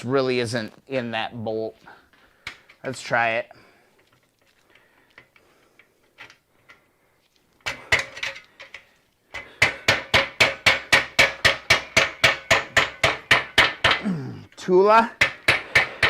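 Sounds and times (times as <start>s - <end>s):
hammer striking metal impact driver: 9.4s - 14.0s.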